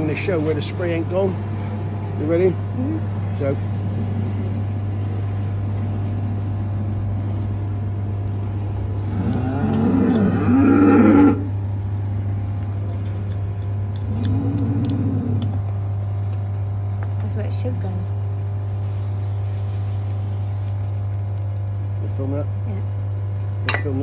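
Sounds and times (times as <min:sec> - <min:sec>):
low machine hum: 0:00.0 - 0:24.0
cow mooing: 0:09.0 - 0:11.6.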